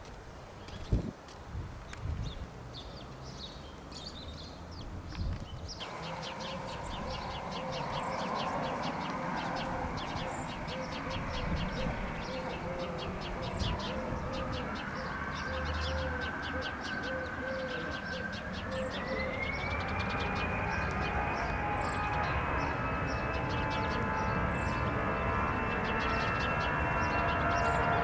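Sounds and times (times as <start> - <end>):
small birds chirping: 0.0 - 1.1, 1.9 - 28.0
jet engines whining: 5.8 - 28.0.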